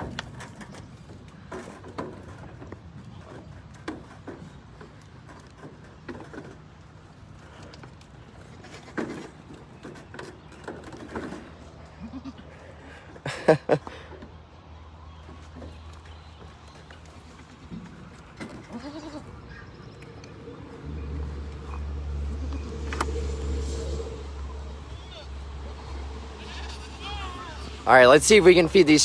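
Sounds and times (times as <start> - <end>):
goats bleating: 11.9 - 13.0, 18.5 - 19.6, 24.8 - 28.2.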